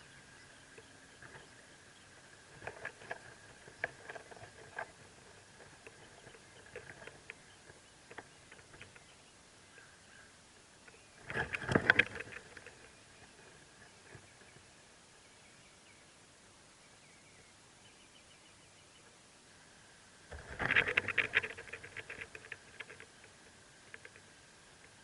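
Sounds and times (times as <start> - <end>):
rustling and scratching in nest: 0.8 - 9.1, 11.2 - 14.6, 20.3 - 25.0.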